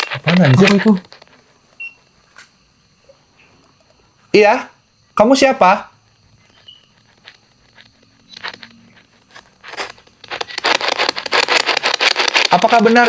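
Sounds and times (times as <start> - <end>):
radio static bursts: 0.0 - 1.3, 6.6 - 13.0.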